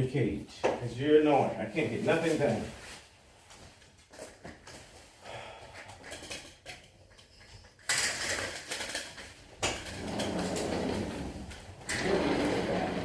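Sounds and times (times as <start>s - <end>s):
metal objects clattering: 5.9s - 12.2s.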